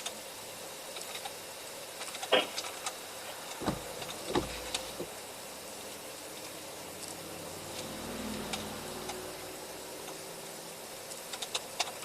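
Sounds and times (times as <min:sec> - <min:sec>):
dull thumps: 0:03.6 - 0:05.1.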